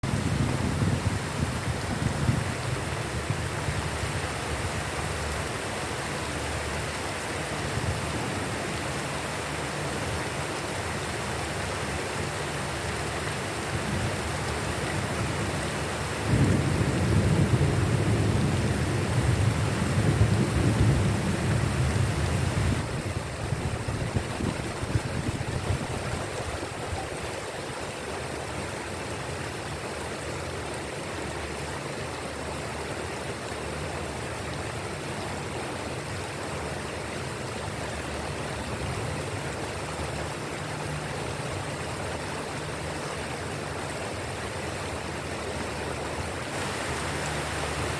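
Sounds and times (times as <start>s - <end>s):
heavy rain falling: 0.0s - 47.9s
thunder rumbling: 15.0s - 26.1s.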